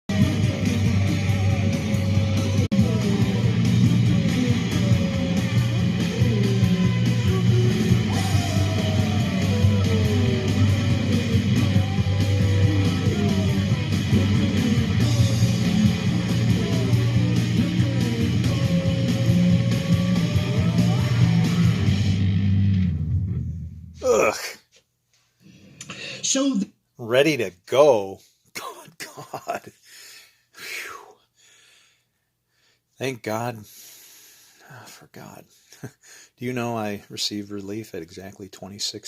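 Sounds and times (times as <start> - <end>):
distorted electric guitar rock music: 0.1 - 23.9.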